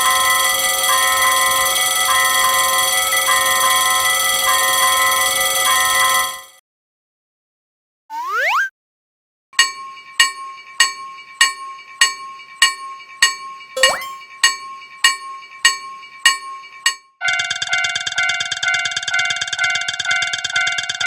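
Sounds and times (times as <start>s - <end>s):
railroad crossing warning bell: 0.0s - 6.6s.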